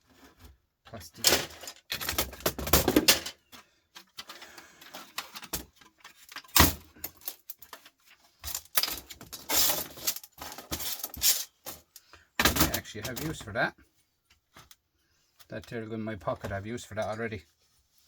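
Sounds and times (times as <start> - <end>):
parts clattering on workbench: 1.2 - 13.4.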